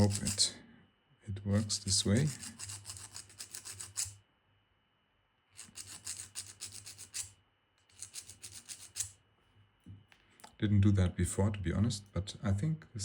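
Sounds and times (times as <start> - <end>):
hand file rasping on metal: 0.0 - 0.5, 1.6 - 4.2, 5.6 - 7.3, 7.9 - 9.2.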